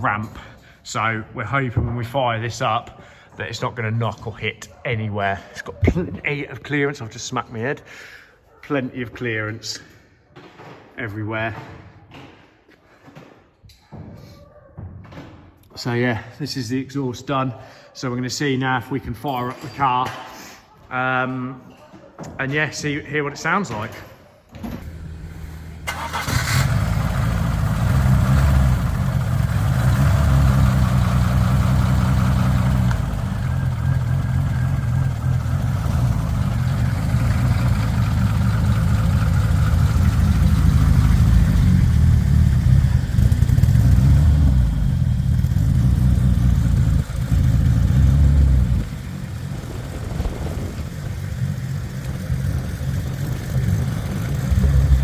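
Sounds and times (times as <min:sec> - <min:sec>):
car engine starting and running: 0:24.8 - 0:55.0
tappety engine ticking: 0:24.9 - 0:49.7, 0:51.0 - 0:55.0.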